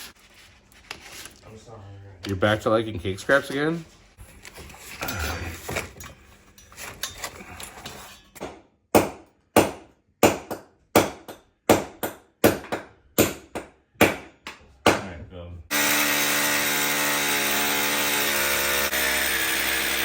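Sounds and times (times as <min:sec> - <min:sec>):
handling and shuffling: 0:00.0 - 0:08.1.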